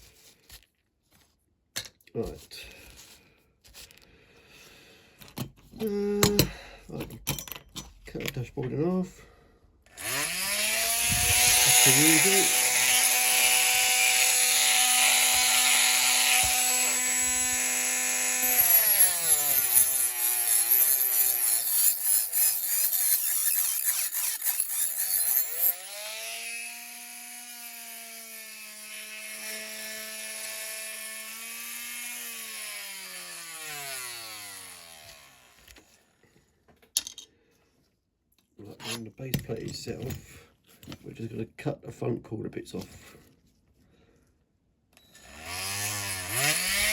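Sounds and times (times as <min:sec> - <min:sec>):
rotary tool motor whine: 0:09.9 - 0:35.9, 0:45.0 - 0:46.9.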